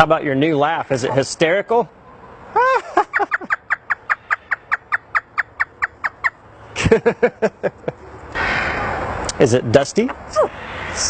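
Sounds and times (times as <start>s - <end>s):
parrot mimicking laughter: 2.5s - 6.3s.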